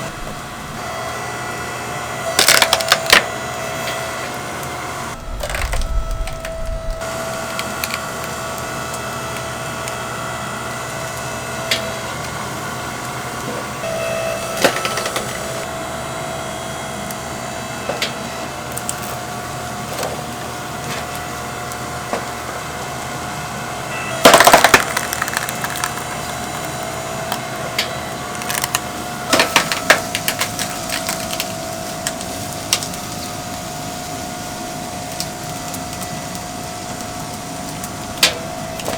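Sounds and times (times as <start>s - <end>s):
oven hum: 0.0s - 38.9s
firewood knocking and cracking: 5.2s - 8.3s, 24.2s - 33.0s.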